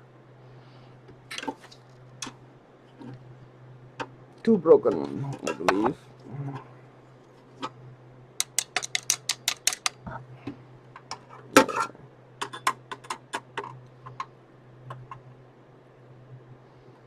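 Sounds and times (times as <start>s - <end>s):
plastic and metal parts clicking: 8.4s - 10.0s.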